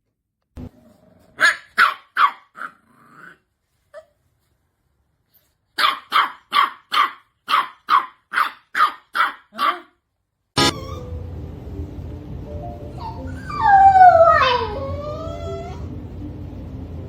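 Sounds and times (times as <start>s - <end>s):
dog barking: 1.4s - 2.8s, 5.8s - 10.0s
music: 10.6s - 17.0s.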